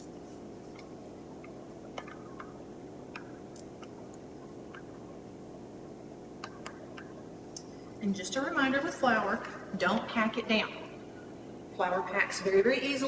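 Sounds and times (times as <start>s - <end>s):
low room hiss: 0.0s - 13.0s.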